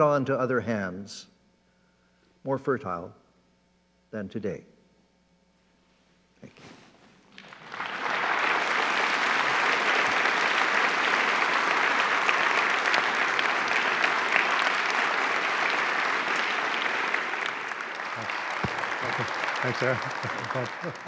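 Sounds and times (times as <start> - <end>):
audience applauding: 7.3 - 21.0.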